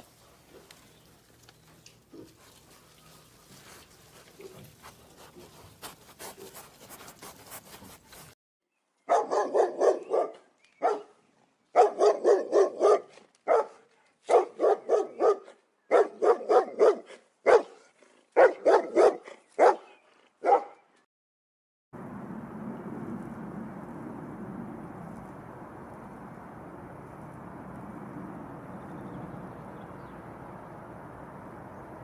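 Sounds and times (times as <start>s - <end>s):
dog barking: 9.1s - 20.8s.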